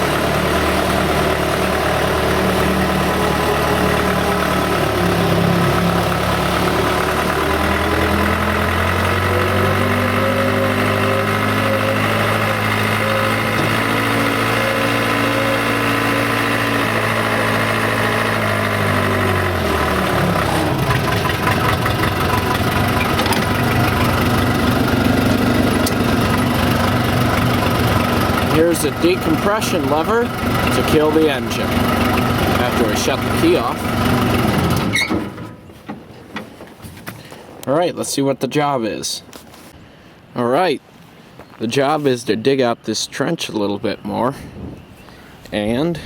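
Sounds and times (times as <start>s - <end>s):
loader diesel engine running: 0.0s - 36.6s.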